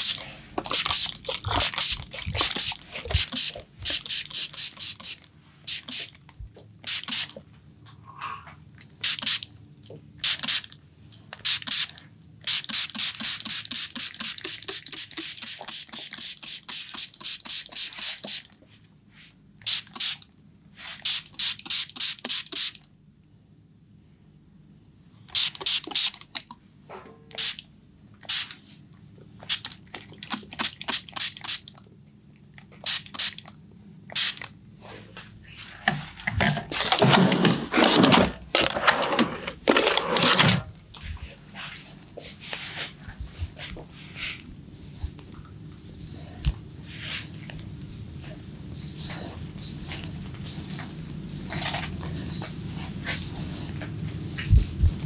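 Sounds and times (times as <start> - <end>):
hissy strokes on hair: 0.8 - 6.2, 11.4 - 22.8, 28.2 - 28.9, 41.3 - 55.0.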